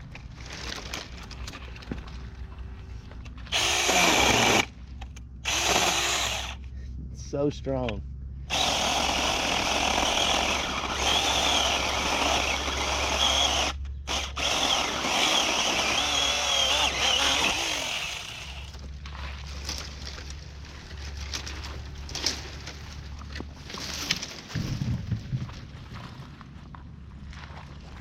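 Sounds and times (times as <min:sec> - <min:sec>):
electric chainsaw cutting wood: 0:03.5 - 0:04.7, 0:05.4 - 0:06.6, 0:08.5 - 0:18.8.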